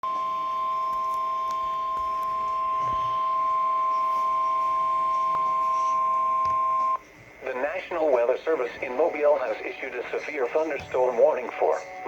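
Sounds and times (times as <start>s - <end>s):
fainter lower tone: 0.0s - 7.0s
steady high alarm tone: 0.0s - 7.0s.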